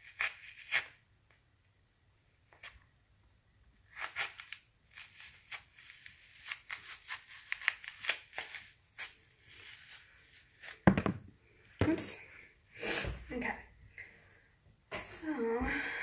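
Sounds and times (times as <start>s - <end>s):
knife cutting through apple: 3.8s - 10.8s.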